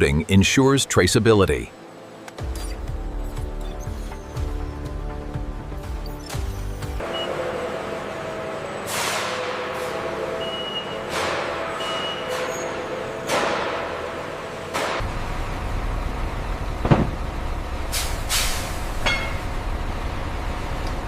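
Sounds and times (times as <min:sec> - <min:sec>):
machinery hum: 0:06.7 - 0:21.0.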